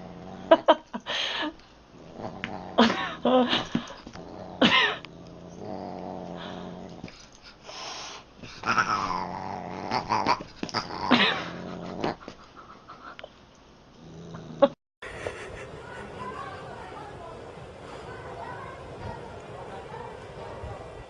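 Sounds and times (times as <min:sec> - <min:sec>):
cat growling and yowling: 0:08.6 - 0:12.2.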